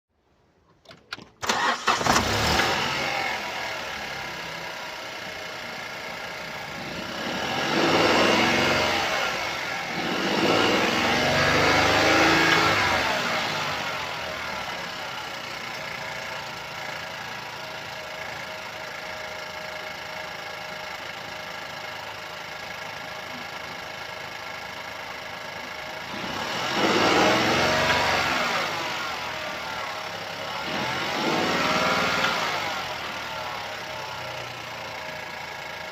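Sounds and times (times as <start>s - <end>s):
engine cranking: 0.7s - 3.2s
engine idling and revving: 1.4s - 35.9s.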